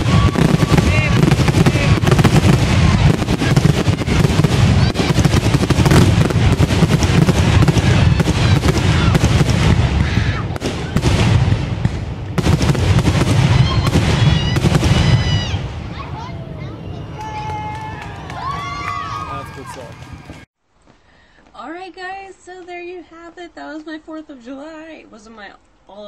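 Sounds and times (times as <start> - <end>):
fireworks bangs and crackles: 0.0 - 20.5.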